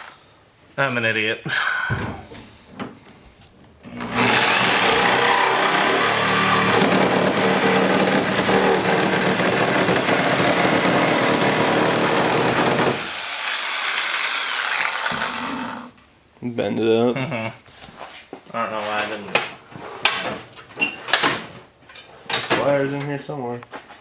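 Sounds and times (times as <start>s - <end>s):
reciprocating saw cutting metal: 4.0s - 15.5s.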